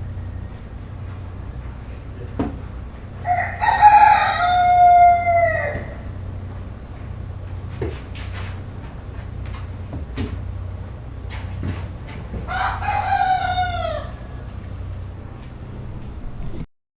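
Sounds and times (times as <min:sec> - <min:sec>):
steady low hum: 0:00.0 - 0:16.7
rooster crowing: 0:03.2 - 0:06.4, 0:12.4 - 0:14.9
chickens clucking: 0:11.6 - 0:14.9.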